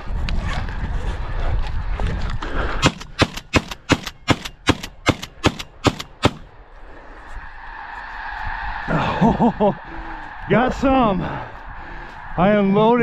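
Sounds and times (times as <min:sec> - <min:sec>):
shotgun shots: 0:02.8 - 0:06.5.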